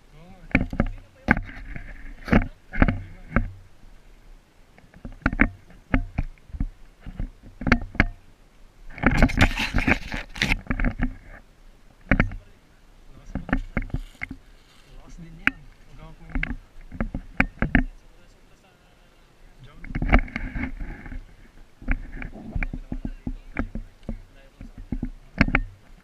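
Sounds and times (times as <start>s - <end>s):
steady low hum: 0.0s - 26.0s
noisy clatter: 0.3s - 3.7s, 8.9s - 11.4s, 13.2s - 18.0s, 19.7s - 26.0s
sharp clicks and knocks: 0.4s - 3.6s, 4.8s - 8.2s, 8.9s - 12.5s, 13.3s - 14.4s, 15.2s - 18.0s, 19.8s - 21.2s, 21.8s - 26.0s.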